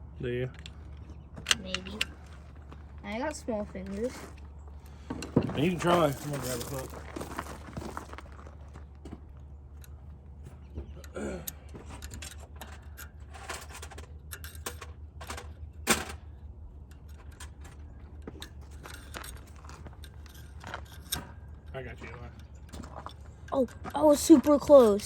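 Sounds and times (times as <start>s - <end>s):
hand tools clinking on metal: 4.9s - 7.4s, 10.6s - 16.3s, 16.9s - 25.0s.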